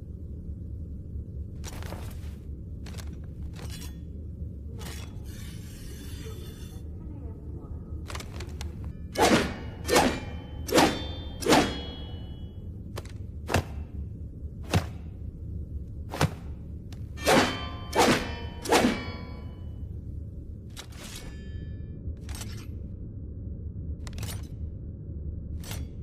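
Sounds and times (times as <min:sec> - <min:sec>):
steady low hum: 0:00.0 - 0:26.0
sword blade swishes: 0:17.2 - 0:19.5
metallic ring: 0:17.2 - 0:19.8.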